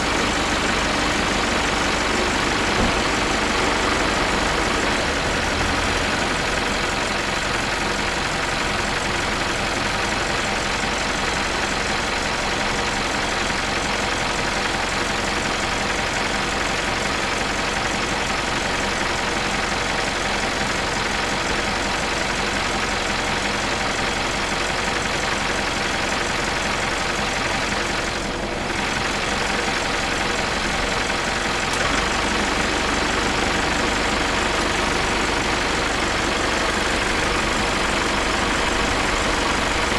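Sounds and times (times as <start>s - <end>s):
diesel engine idling with rattling: 0.0s - 39.9s.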